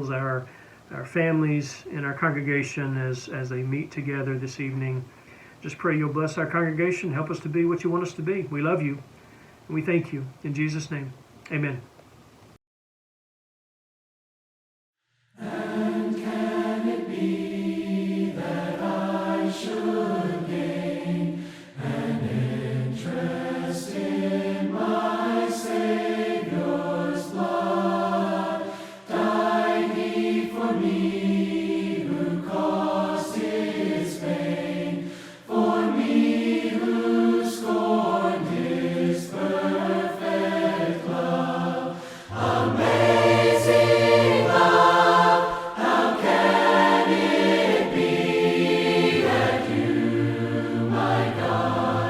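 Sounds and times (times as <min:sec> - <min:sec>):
choir singing a hymn: 0:15.4 - 0:52.0.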